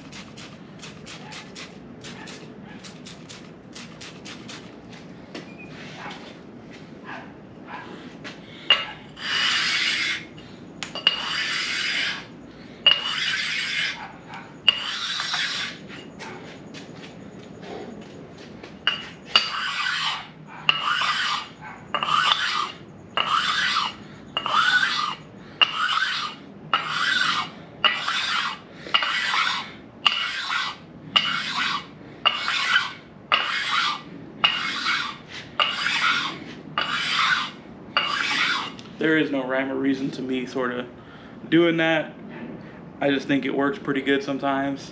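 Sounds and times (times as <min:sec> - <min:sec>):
sharpening stone rasping on metal: 0:08.7 - 0:10.3, 0:11.0 - 0:12.3, 0:12.9 - 0:14.0, 0:14.6 - 0:15.8, 0:18.9 - 0:38.8.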